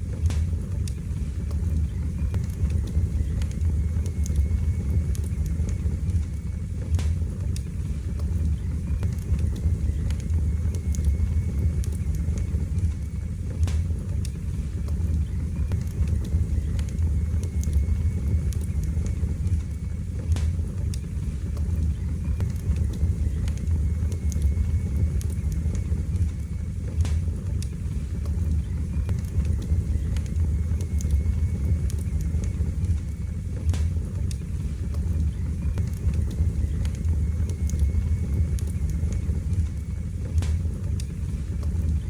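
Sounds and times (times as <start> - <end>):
fire crackling in fireplace: 0.0 - 42.0.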